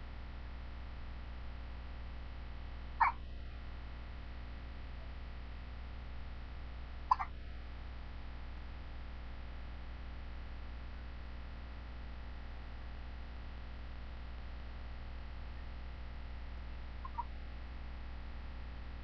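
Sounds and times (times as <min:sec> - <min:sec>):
steady low hum: 0:00.0 - 0:19.0
baby hiccup: 0:07.1 - 0:07.3.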